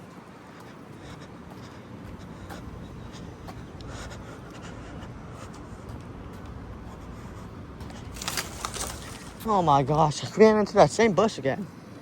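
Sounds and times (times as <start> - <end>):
footsteps: 0.0 - 10.0
air conditioning units humming: 0.0 - 12.0
light rustling: 5.6 - 9.8.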